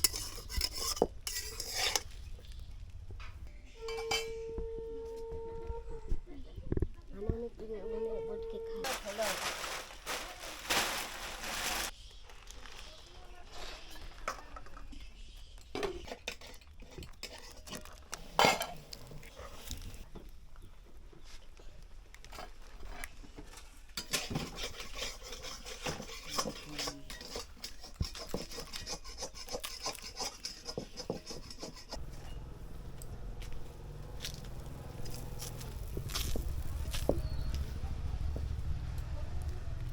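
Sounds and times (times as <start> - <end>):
metal utensils clinking on dishes: 24.0 - 32.4.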